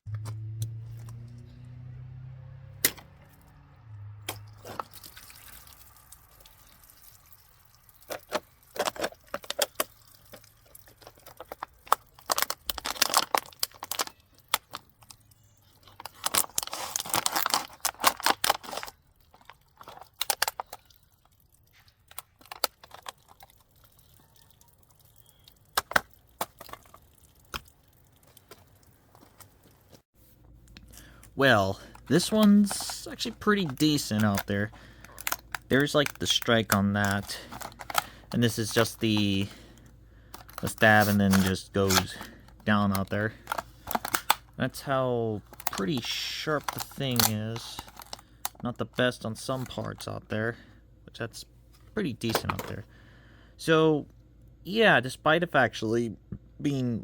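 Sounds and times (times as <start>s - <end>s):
tearing scraping noise: 16.1s - 18.9s, 40.6s - 42.3s.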